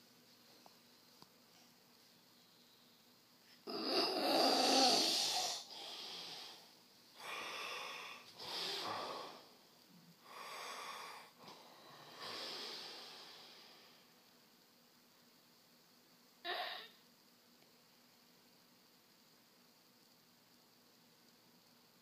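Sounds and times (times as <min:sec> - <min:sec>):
person snoring: 0:03.6 - 0:09.5.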